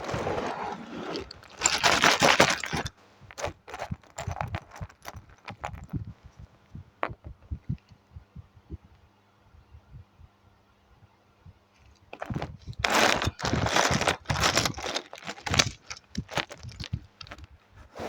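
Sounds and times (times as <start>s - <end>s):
plastic pieces clattering: 1.0s - 6.0s, 12.2s - 17.5s.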